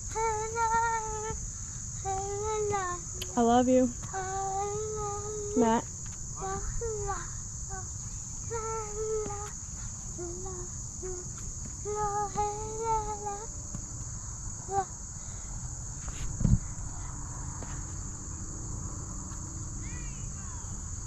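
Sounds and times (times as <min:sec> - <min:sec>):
child calling: 0:00.0 - 0:01.4, 0:02.0 - 0:09.6, 0:10.2 - 0:13.5, 0:19.8 - 0:20.7
crickets trilling: 0:00.0 - 0:21.0.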